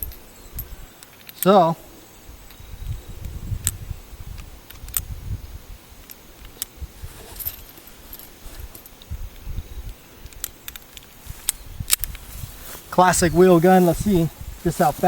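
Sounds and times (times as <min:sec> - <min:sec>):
wind on microphone: 0:00.0 - 0:01.0, 0:01.8 - 0:15.0
light metallic clicks: 0:07.4 - 0:12.2.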